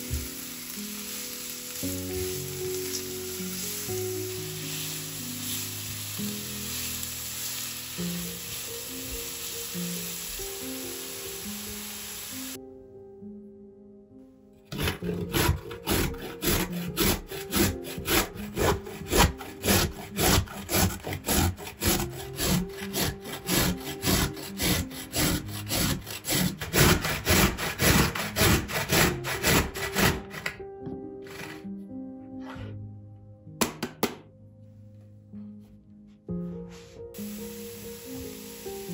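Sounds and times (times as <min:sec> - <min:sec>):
background music: 0:00.0 - 0:38.9
rasping strokes: 0:14.7 - 0:30.5.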